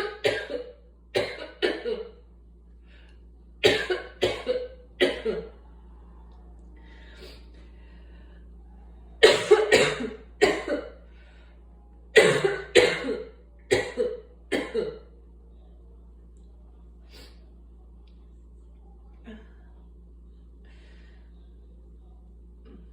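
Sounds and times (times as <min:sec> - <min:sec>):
person coughing: 0:00.0 - 0:02.2, 0:03.6 - 0:05.5, 0:09.2 - 0:11.0, 0:12.2 - 0:15.0.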